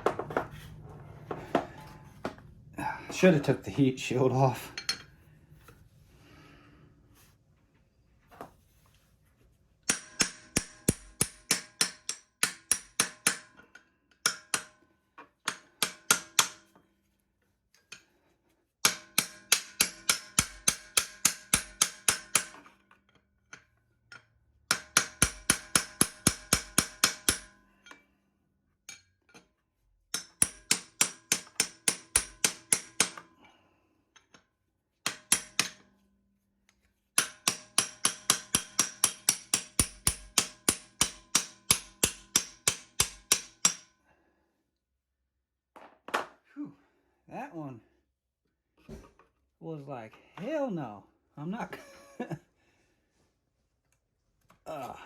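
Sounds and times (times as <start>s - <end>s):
hammer striking metal punch: 9.8s - 13.6s, 18.8s - 22.6s, 24.7s - 27.6s, 30.1s - 33.3s, 35.0s - 35.9s, 37.2s - 43.9s.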